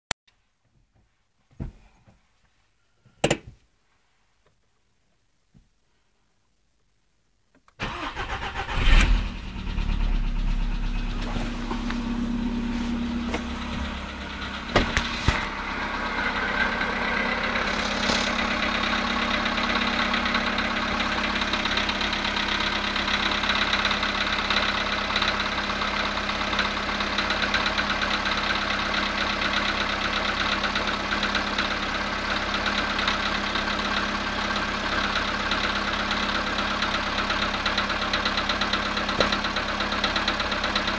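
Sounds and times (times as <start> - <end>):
engine idling with knock: 10.0 - 40.9.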